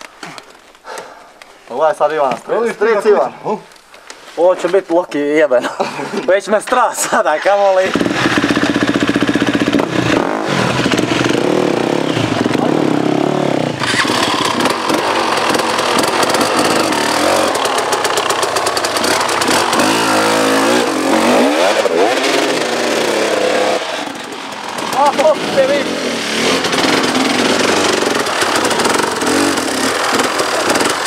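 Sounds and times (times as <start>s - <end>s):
dirt bike engine revving: 7.4s - 31.0s.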